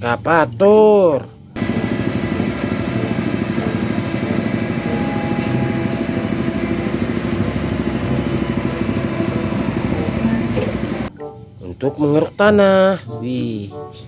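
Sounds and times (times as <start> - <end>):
small engine running: 1.6 - 11.1.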